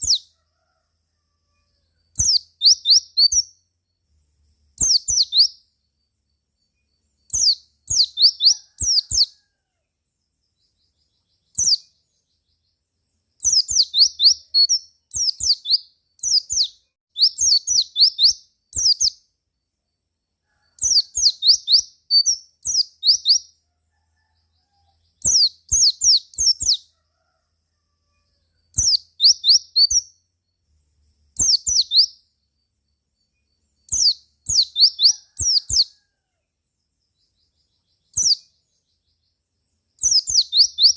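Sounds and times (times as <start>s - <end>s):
bird singing high chirps: 0.0s - 0.4s, 1.5s - 9.5s, 10.4s - 23.6s, 24.2s - 26.9s, 28.2s - 36.0s, 37.0s - 39.4s, 40.0s - 40.9s.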